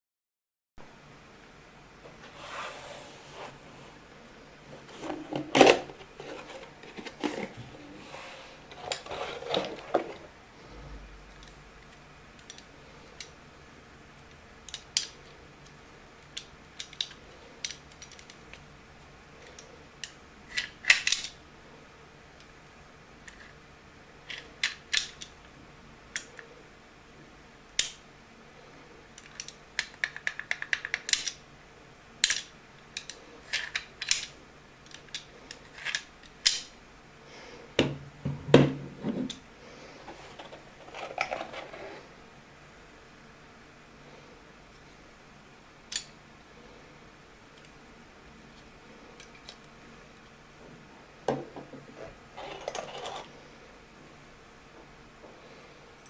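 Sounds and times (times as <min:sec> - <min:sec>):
packaging rustling: 0:04.8 - 0:10.3, 0:40.0 - 0:42.1
metal lock parts clicking: 0:29.2 - 0:31.4.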